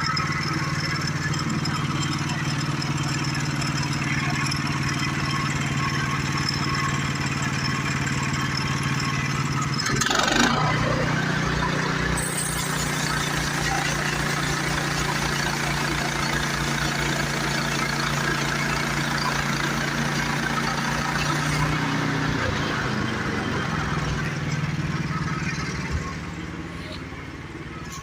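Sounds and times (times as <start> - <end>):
small gas engine running: 0.0 - 28.0.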